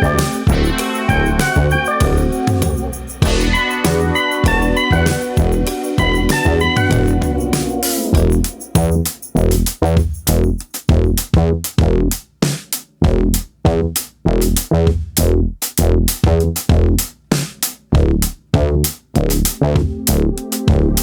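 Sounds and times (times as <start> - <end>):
electronic music with drum-machine beat: 0.0 - 12.4, 17.9 - 21.0.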